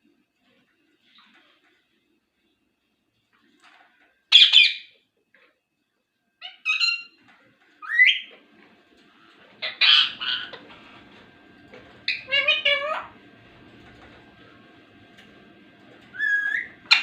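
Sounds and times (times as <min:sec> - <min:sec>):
parrot squawking: 0:04.3 - 0:04.9, 0:06.4 - 0:07.2, 0:07.8 - 0:08.3, 0:09.6 - 0:10.8, 0:12.0 - 0:13.2, 0:16.1 - 0:17.0.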